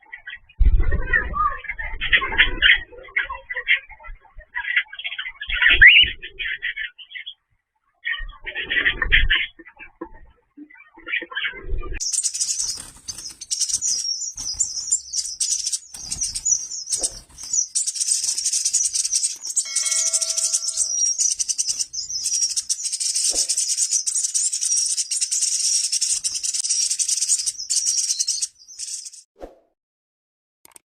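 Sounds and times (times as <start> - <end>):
finches and canaries chirping: 10.8 - 29.2.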